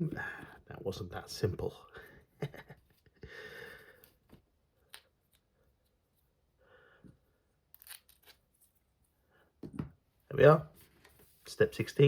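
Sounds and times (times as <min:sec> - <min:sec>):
soft breaths: 0:03.2 - 0:04.4, 0:05.4 - 0:07.6.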